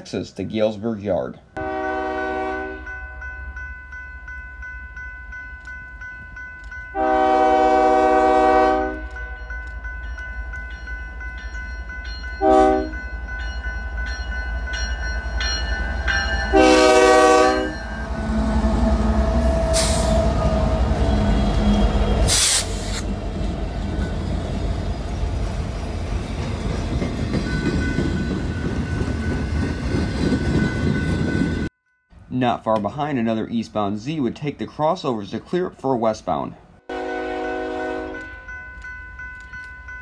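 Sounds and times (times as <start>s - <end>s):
low rumble of moving train: 1.4s - 32.4s
locomotive air horn blasts: 1.6s - 2.9s, 7.0s - 9.2s, 12.4s - 13.0s, 16.5s - 23.0s, 36.9s - 38.4s.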